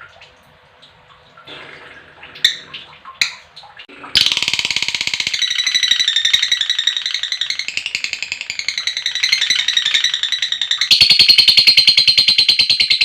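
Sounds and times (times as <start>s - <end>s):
lovebird chattering: 4.2s - 13.0s.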